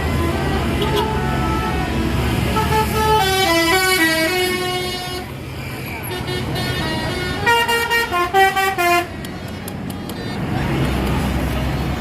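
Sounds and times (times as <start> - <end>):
musical bus horn: 0.0 - 5.3, 6.0 - 9.4
bus engine rumble: 0.0 - 12.0.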